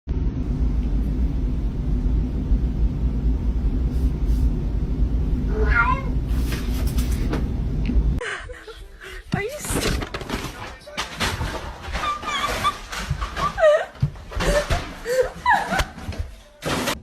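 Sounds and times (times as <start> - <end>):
steady low rumble: 0.1 - 8.2
cat meowing: 5.5 - 6.2.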